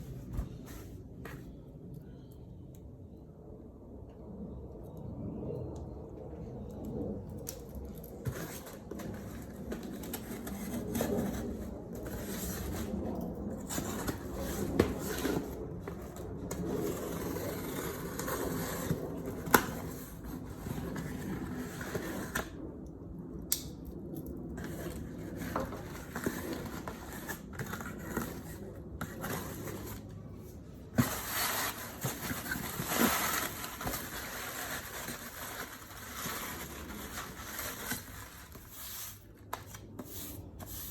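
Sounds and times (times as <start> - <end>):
packaging rustling and scraping: 7.6 - 22.6, 24.6 - 40.9.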